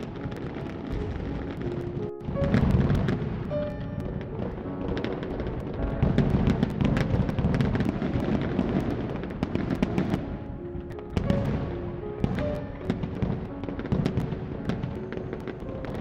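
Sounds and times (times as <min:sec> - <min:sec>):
fireworks crackling: 0:00.0 - 0:16.0
music: 0:00.0 - 0:16.0
rumble of booms: 0:00.1 - 0:10.4.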